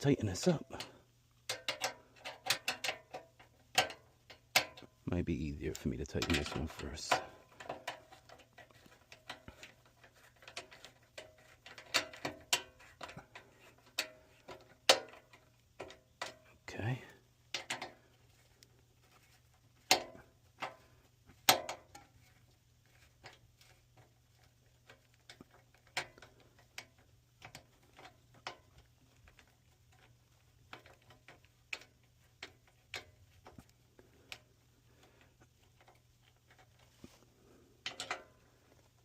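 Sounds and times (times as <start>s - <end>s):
tool clicks and knocks: 21.4s - 22.1s.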